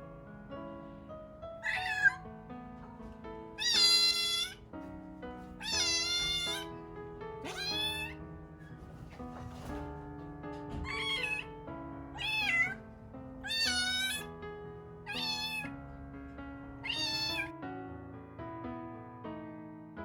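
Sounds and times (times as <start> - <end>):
kitten meowing: 1.6 - 2.2, 3.6 - 4.6, 5.6 - 6.8, 7.4 - 8.2, 10.8 - 11.5, 12.1 - 12.8, 13.4 - 14.3, 15.1 - 15.8, 16.8 - 17.5.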